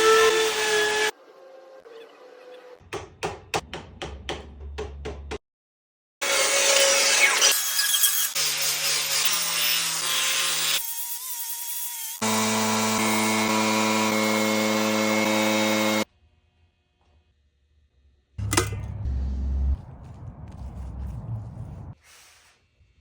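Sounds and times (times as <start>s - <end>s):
power carving tool whine: 6.3s - 16.1s
loud low thump: 18.4s - 21.9s
hiss: 22.0s - 22.8s.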